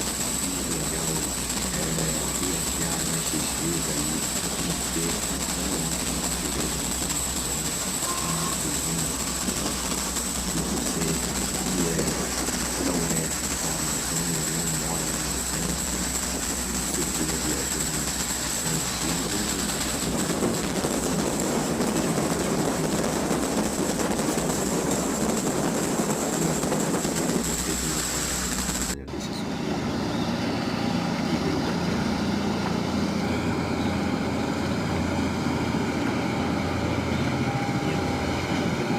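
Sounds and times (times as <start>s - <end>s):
jet boat engine drone: 0.0s - 38.9s.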